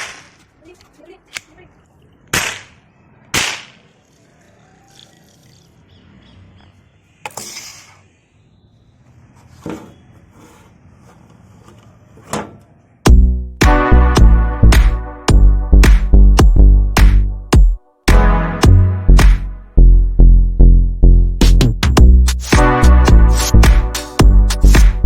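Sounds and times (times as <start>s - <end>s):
toy gun shots cracking: 0.0s - 0.5s, 2.3s - 3.9s
electronic music with heavy beat: 13.1s - 19.5s, 21.3s - 25.0s.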